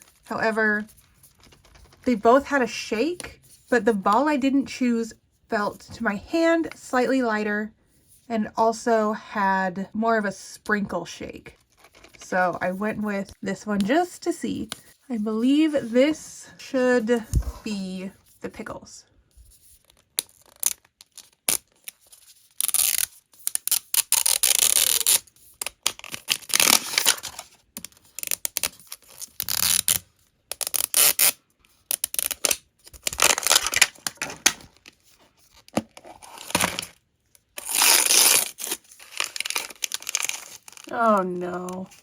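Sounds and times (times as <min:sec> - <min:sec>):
plastic packaging tearing and crinkling: 0:20.2 - 0:40.9.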